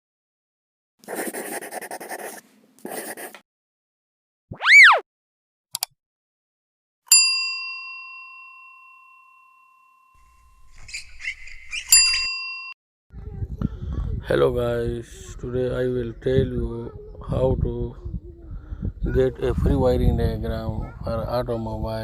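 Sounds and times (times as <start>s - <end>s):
swooping tone: 4.5s - 5.0s
brief click: 5.7s - 5.9s
bell-like ding: 7.1s - 10.3s.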